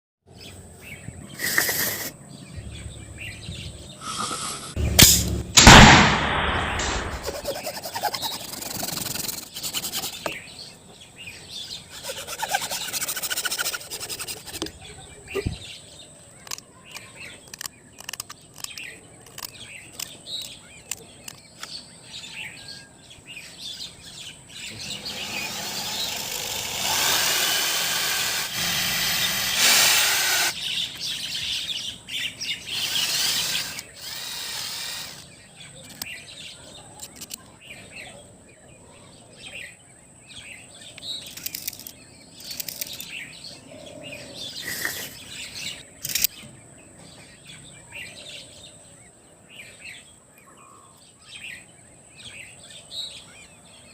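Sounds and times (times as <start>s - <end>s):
birds chirping: 0.3s - 53.9s.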